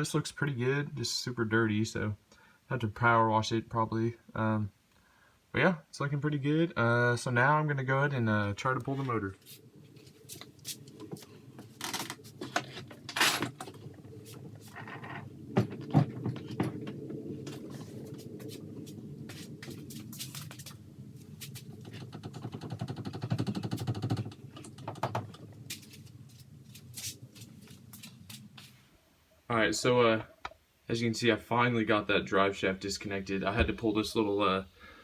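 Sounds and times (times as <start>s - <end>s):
rapid metal rattling: 9.4s - 28.7s.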